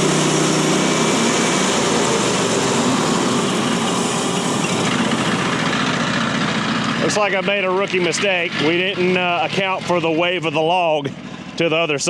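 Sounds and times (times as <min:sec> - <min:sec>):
band saw cutting log: 0:00.0 - 0:10.2
gas engine running: 0:00.0 - 0:11.7.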